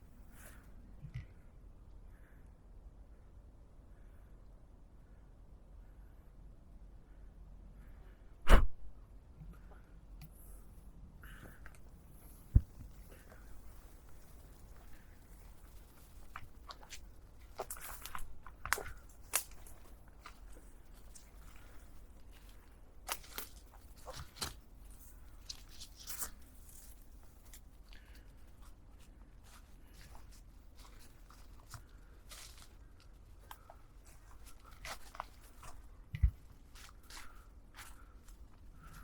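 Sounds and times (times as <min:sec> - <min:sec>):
low thump: 0:08.5 - 0:08.8
footsteps crunching on path: 0:11.4 - 0:39.0.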